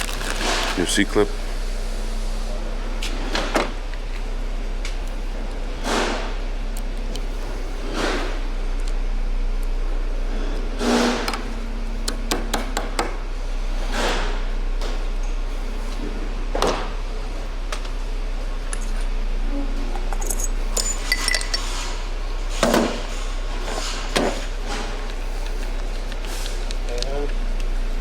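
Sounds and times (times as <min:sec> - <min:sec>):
metal parts clinking: 0:19.9 - 0:22.0
metallic ringing: 0:20.0 - 0:21.9.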